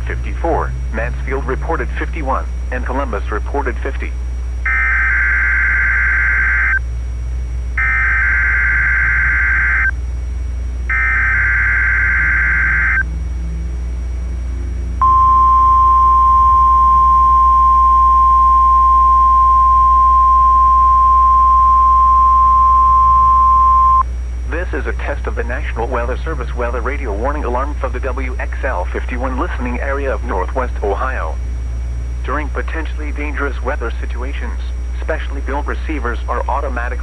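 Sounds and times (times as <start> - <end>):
steady alarm tone: 0.0 - 33.8
buzzy data tone bursts: 0.0 - 37.0
low radio hum: 0.0 - 37.0.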